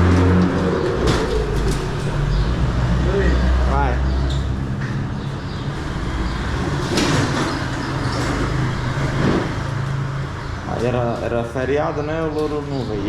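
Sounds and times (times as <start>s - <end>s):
sliding gate rolling on track: 0.0s - 3.0s, 5.7s - 11.6s
gate scraping: 0.0s - 3.6s, 4.2s - 10.6s.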